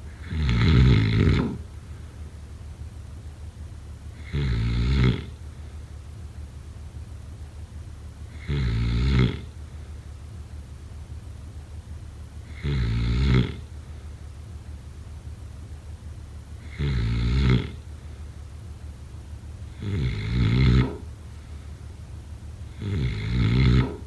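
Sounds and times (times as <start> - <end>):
steady low hum: 0.0 - 24.0
person snoring: 0.1 - 1.6, 4.2 - 5.3, 8.4 - 9.5, 12.5 - 13.6, 16.6 - 17.8, 19.8 - 21.1, 22.7 - 24.0.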